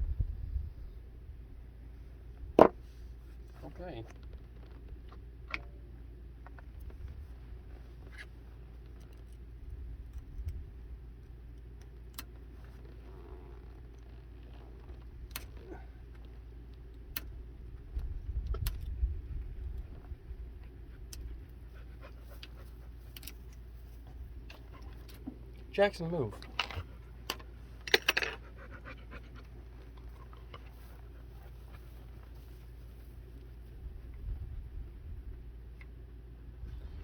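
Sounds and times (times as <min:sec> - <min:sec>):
steady low hum: 0:00.0 - 0:37.0
dog panting: 0:20.6 - 0:25.1, 0:28.3 - 0:32.4.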